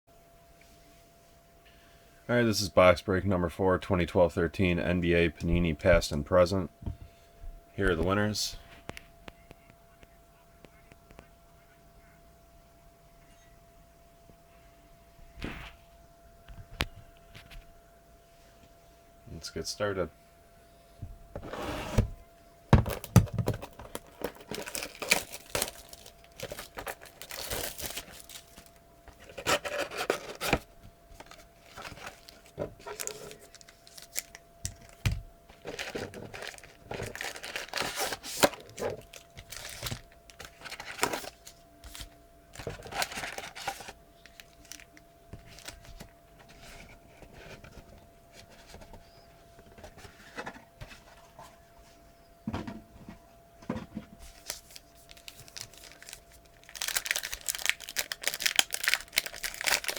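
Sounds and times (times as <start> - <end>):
card packs being torn open: 22.8 - 46.1, 54.3 - 59.9
wrappers crinkling: 22.9 - 46.8, 54.3 - 59.9.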